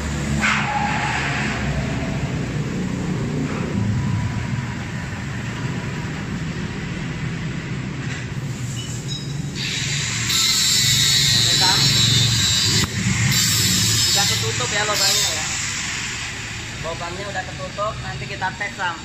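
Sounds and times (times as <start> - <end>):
arc welder buzzing: 9.6 - 16.7.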